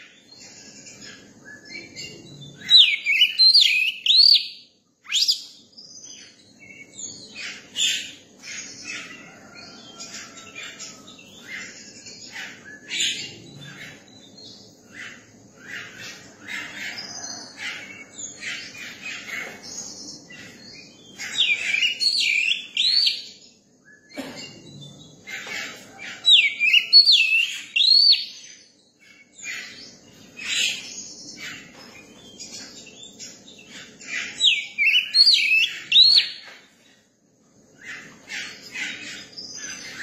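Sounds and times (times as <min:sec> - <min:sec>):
bird singing chirps and whistles: 0:00.5 - 0:05.6, 0:21.2 - 0:23.3, 0:26.2 - 0:28.6, 0:34.2 - 0:36.4.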